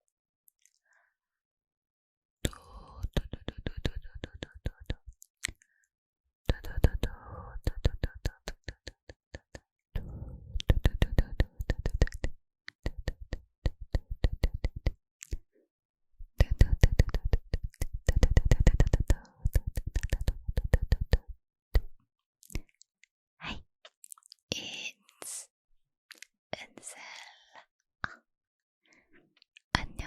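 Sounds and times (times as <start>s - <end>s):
mouth clicks: 6.5s - 15.4s, 16.4s - 22.8s.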